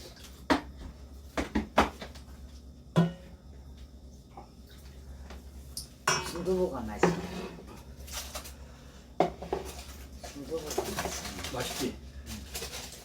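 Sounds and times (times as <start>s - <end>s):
bowls and utensils clacking: 5.8s - 7.5s.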